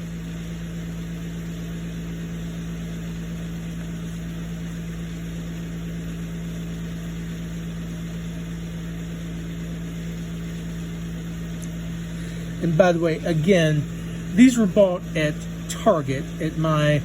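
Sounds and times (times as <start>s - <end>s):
low-pitched hum: 11.6s - 17.0s.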